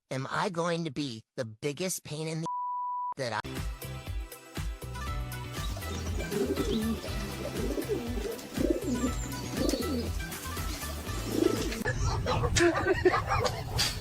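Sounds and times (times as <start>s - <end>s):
background music: 3.4s - 11.9s.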